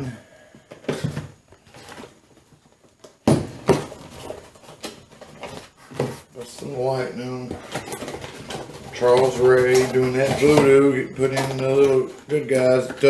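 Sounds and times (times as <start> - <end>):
toy packaging rustling: 4.0 - 13.0.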